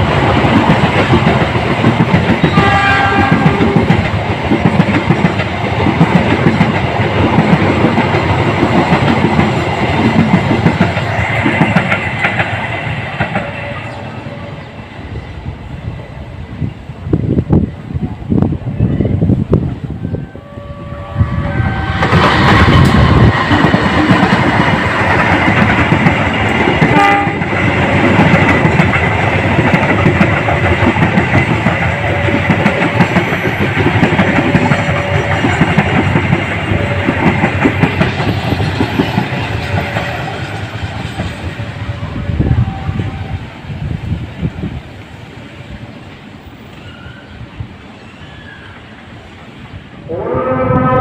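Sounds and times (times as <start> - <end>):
deep train horn: 2.4 - 4.0, 20.0 - 24.3, 26.8 - 28.3, 31.6 - 33.7, 34.5 - 37.9, 41.4 - 43.5, 50.0 - 51.0.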